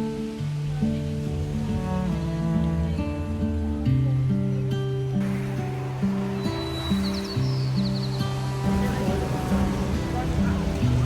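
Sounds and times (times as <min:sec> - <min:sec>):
slow low-note music: 0:00.0 - 0:11.0
steady rushing hiss: 0:00.0 - 0:11.0.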